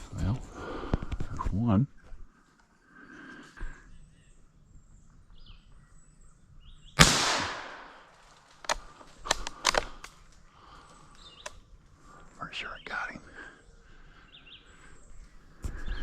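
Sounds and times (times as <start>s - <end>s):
gunshot echoing: 7.0s - 8.2s.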